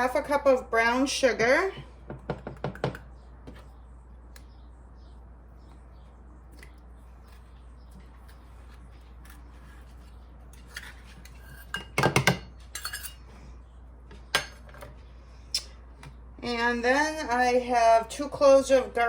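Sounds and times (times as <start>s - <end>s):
utensils clinking on mixing bowl: 10.5s - 13.3s.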